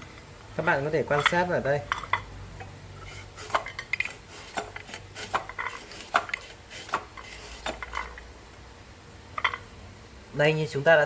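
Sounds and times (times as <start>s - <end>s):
vegetable slicer clicking: 3.4s - 8.2s.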